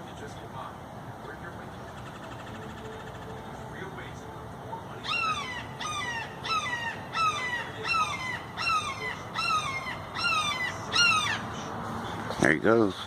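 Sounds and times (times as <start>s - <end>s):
hawk screaming: 5.0s - 11.5s.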